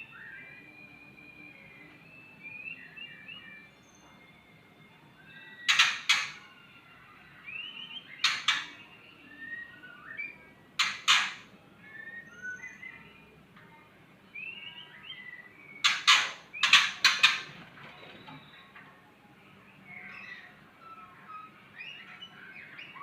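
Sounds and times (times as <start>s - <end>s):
bird whistling phrases: 11.9s - 13.2s.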